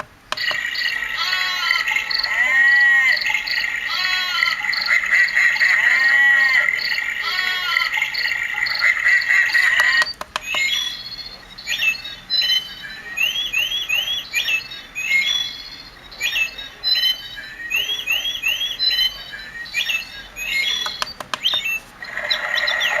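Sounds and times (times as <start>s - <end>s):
clicks: 0.0s - 0.9s, 9.6s - 10.7s, 20.8s - 22.4s
frogs croaking: 0.0s - 23.0s
recorded birdsong chirps and whistles: 0.0s - 23.0s.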